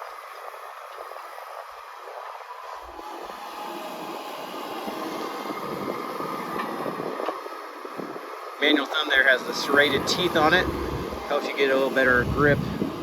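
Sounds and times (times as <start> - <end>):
hydraulic excavator working: 2.9 - 13.0.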